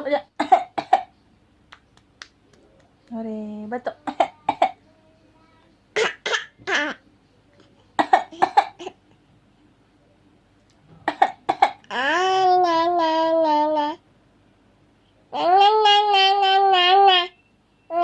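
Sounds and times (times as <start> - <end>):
baby coughing: 0.4 - 1.1, 4.0 - 4.8, 6.0 - 7.0, 8.0 - 9.0, 11.0 - 12.0.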